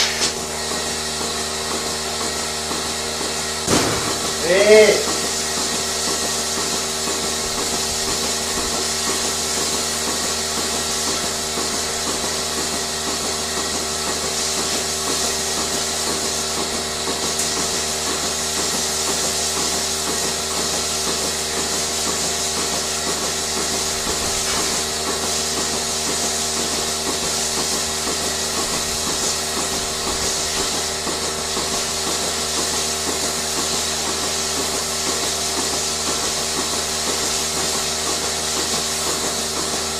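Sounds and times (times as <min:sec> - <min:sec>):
machinery humming: 0:03.4 - 0:08.6
hiss: 0:03.7 - 0:39.9.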